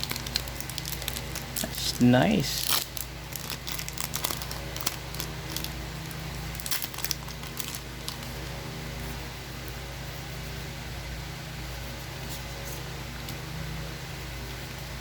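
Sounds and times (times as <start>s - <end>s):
foil wrappers crinkling: 0.0s - 8.5s
steady low hum: 0.0s - 15.0s.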